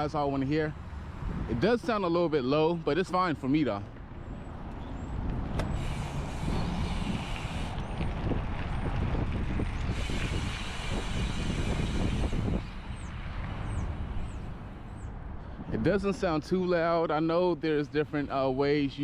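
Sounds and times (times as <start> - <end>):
road traffic: 0.0 - 19.0
bike hub freewheeling buzz: 5.6 - 15.1.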